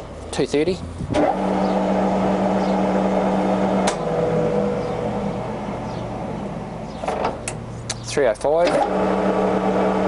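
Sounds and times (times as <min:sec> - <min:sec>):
lathe gear hum: 0:08.7 - 0:10.0.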